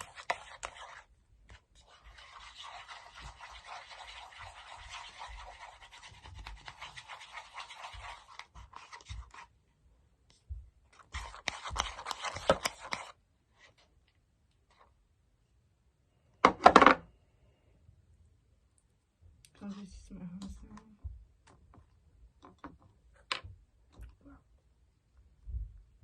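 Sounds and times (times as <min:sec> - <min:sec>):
slime being stirred in container: 0:00.0 - 0:09.6, 0:10.9 - 0:13.8.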